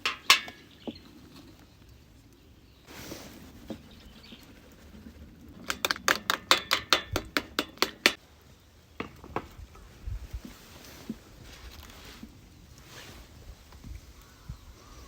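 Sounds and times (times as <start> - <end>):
rapid sharp knocks: 5.6 - 8.2.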